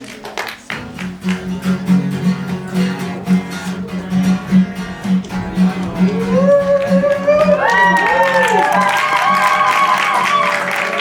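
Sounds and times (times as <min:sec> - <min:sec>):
strummed intro music: 0:00.7 - 0:09.6
pulsing low note: 0:03.6 - 0:08.7.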